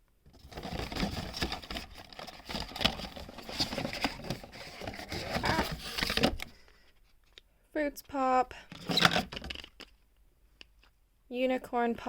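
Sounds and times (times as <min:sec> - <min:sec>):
plastic packaging crinkling: 0:00.3 - 0:06.6.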